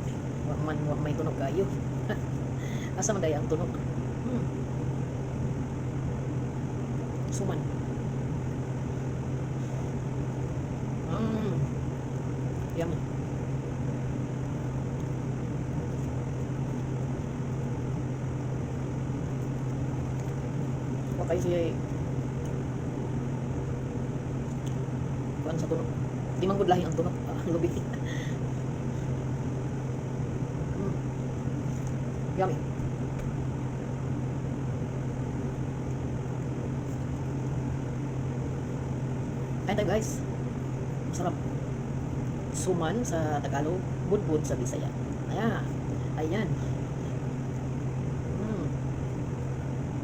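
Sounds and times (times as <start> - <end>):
low machine hum: 0.0 - 50.0.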